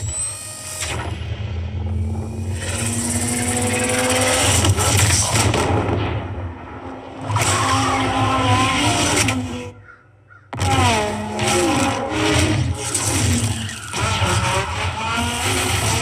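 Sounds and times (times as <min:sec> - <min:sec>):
sports car engine revving: 0:01.6 - 0:05.7, 0:10.6 - 0:16.0.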